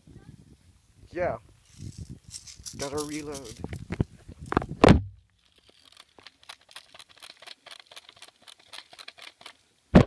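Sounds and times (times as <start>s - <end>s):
pellets clicking into magazine: 5.4s - 9.6s.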